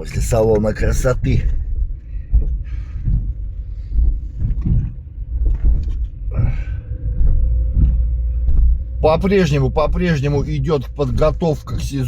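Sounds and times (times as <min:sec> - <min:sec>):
car rumbling over rough road: 0:00.0 - 0:12.0
car thumping over potholes: 0:00.4 - 0:12.0.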